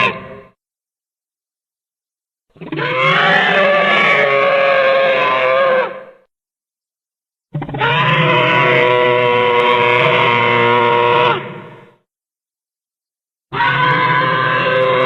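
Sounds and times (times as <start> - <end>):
dragon roar: 2.6 - 6.1, 13.5 - 15.0.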